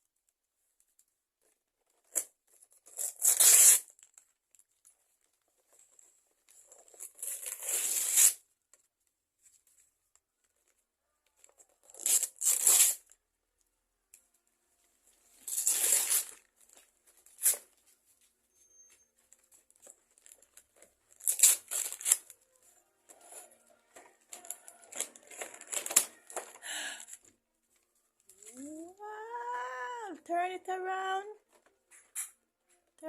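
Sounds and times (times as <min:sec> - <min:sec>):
wrapping paper tearing and crinkling: 0:02.1 - 0:04.2, 0:06.8 - 0:08.4, 0:11.8 - 0:13.2, 0:15.4 - 0:17.7, 0:19.7 - 0:22.4, 0:24.2 - 0:26.6.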